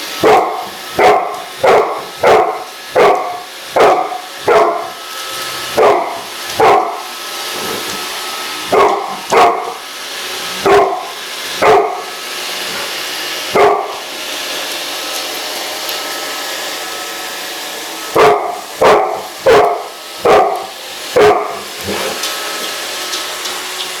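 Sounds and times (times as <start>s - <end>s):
robot vacuum running: 0.0s - 24.0s
dog barking: 0.2s - 5.0s, 5.8s - 7.1s, 8.7s - 9.8s, 10.6s - 12.1s, 13.5s - 14.0s, 18.1s - 22.2s.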